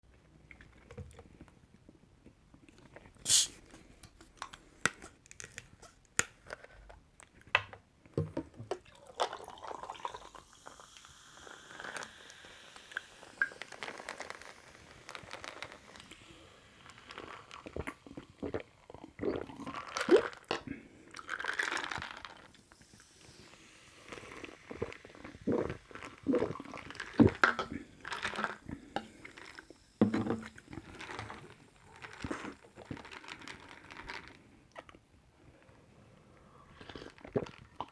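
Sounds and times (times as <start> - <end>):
person sipping and swallowing: 3.3 - 3.6, 9.6 - 35.0, 36.6 - 37.9.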